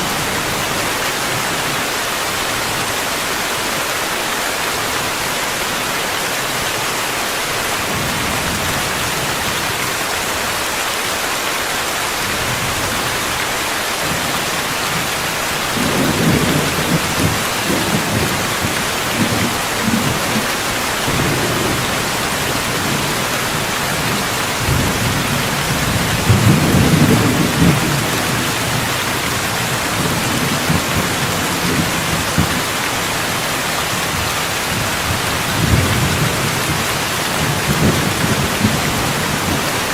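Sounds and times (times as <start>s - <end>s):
heavy rain hiss: 0.0s - 39.9s
rolling thunder: 15.7s - 32.7s, 33.3s - 39.9s.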